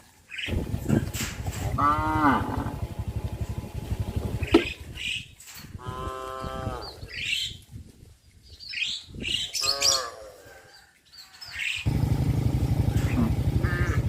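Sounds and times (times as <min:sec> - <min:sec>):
cows mooing: 0:01.6 - 0:03.1, 0:05.8 - 0:07.0, 0:13.0 - 0:14.0.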